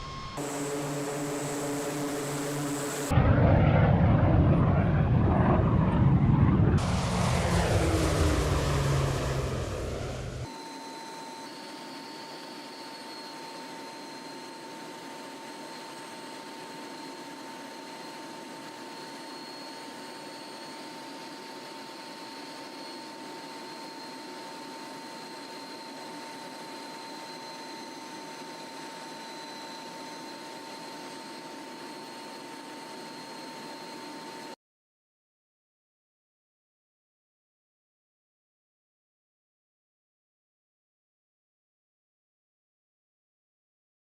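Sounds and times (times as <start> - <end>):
aircraft noise in flight: 0.0 - 34.6
constant high whine: 0.0 - 34.6.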